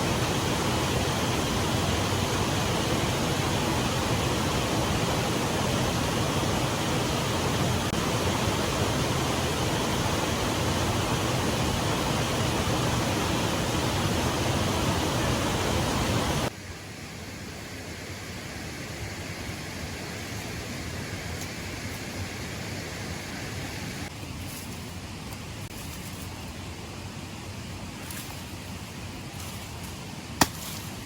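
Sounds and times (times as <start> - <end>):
steady rushing noise: 0.0 - 16.5.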